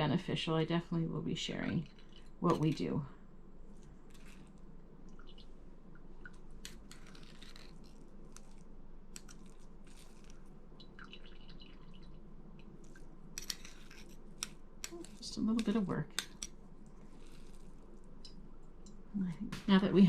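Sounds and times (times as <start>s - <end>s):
soft wet squishing: 1.5s - 19.2s.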